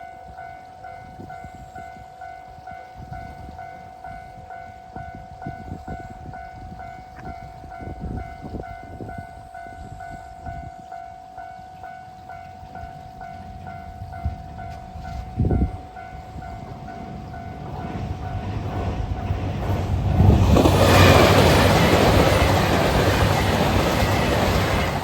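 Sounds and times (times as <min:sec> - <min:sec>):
diesel train rumbling past: 0:02.8 - 0:25.0
wheels thumping over rail joints: 0:16.7 - 0:25.0.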